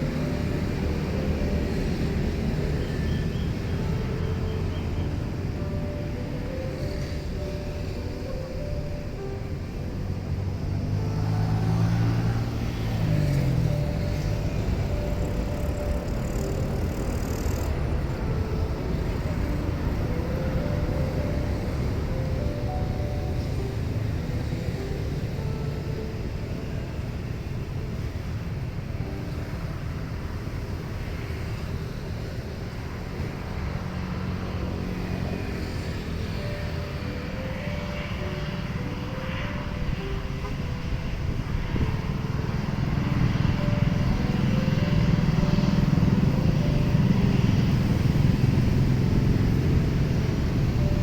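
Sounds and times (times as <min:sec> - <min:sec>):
faint steady tones: 0:00.0 - 0:51.0
vehicle engine humming past: 0:00.0 - 0:51.0.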